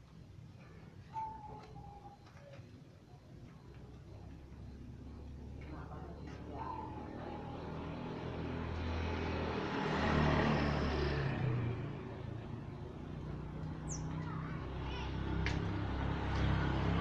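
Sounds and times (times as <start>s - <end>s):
faint bird chirps: 0.6s - 5.4s
vehicle passing: 4.7s - 17.0s.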